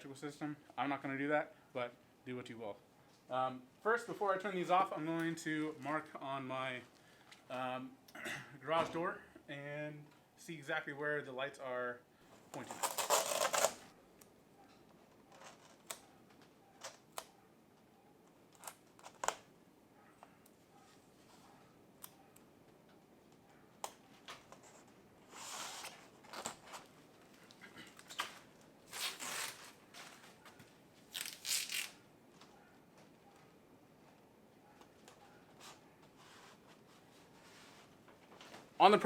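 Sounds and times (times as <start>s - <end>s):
adhesive tape tearing: 12.6s - 13.9s, 18.6s - 19.5s, 23.8s - 26.8s, 28.0s - 29.8s, 31.1s - 32.0s.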